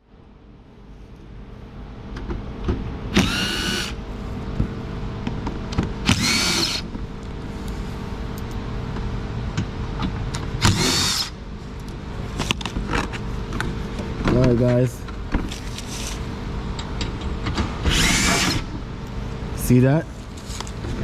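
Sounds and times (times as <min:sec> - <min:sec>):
cordless drill whining: 0:03.1 - 0:04.0, 0:06.0 - 0:06.9, 0:10.6 - 0:11.3, 0:17.9 - 0:18.7.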